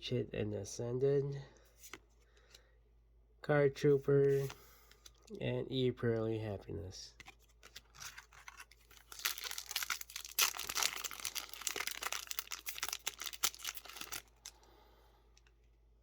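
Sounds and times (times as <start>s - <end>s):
foil wrapper tearing and crinkling: 7.8s - 14.5s.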